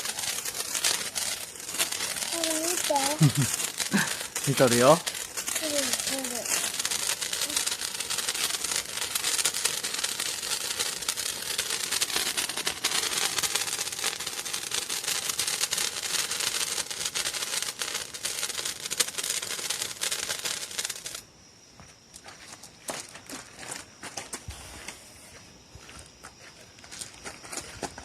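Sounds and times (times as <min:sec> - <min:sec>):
handheld firework hissing and crackling: 0:00.0 - 0:21.4, 0:22.4 - 0:28.0.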